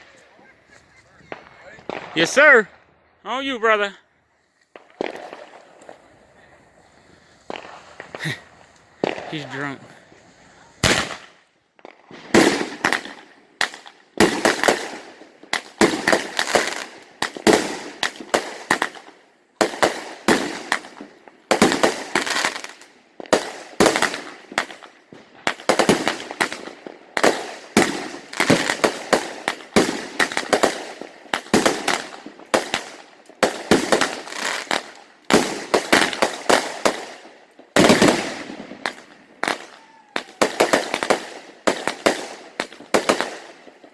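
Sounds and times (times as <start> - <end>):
firework cake bangs: 25.5 - 37.2, 37.8 - 43.5.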